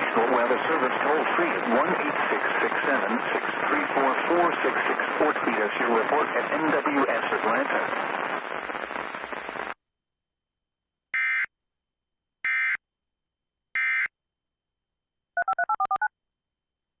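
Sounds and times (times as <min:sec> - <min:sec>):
touch-tone beeps: 0:15.4 - 0:16.1.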